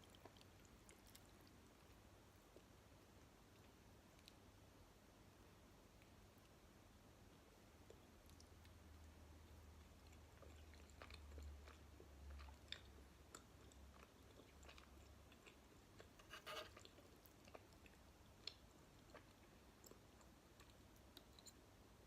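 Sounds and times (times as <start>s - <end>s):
chewing gummy candy: 0.0s - 2.7s, 7.3s - 21.6s
low steady hum: 0.0s - 22.0s.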